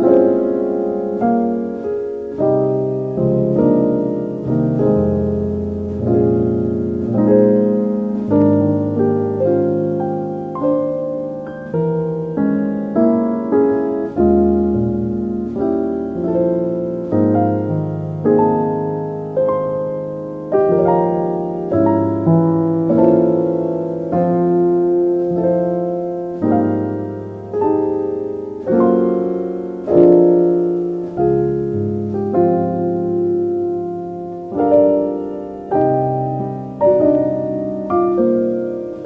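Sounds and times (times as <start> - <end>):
slow solo piano: 0.0 - 39.0.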